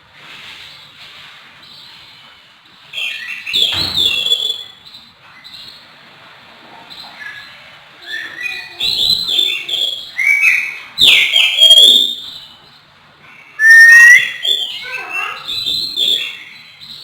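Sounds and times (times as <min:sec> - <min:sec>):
magpie-robin singing whistled phrases: 0:08.0 - 0:12.5, 0:13.6 - 0:17.0.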